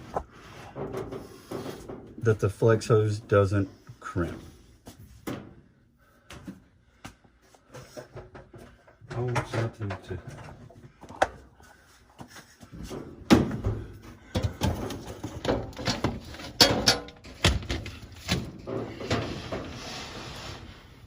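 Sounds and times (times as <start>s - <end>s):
clothes dryer knocking and clunking: 12.8s - 19.0s.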